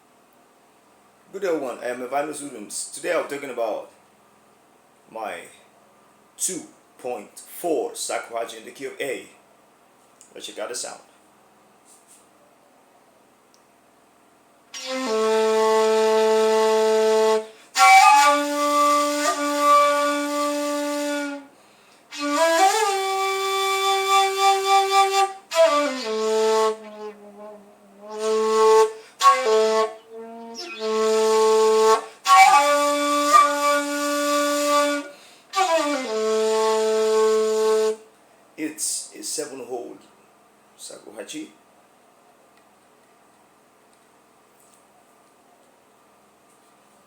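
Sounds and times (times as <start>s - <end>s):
breathy shakuhachi notes: 14.8s - 38.0s.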